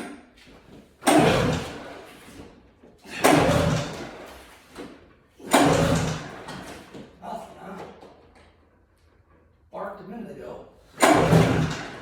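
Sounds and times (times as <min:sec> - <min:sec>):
engine turning over: 0:01.0 - 0:02.4, 0:03.1 - 0:04.8, 0:05.4 - 0:07.0, 0:11.0 - 0:12.0
recoil starter rope rasping: 0:01.0 - 0:07.1, 0:10.9 - 0:12.0.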